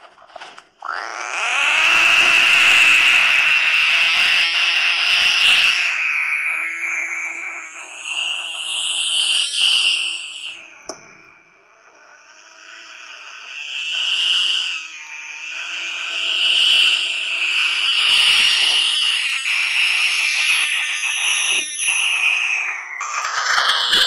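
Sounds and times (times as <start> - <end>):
frog giving shrill squeaky call: 0.8 - 10.6.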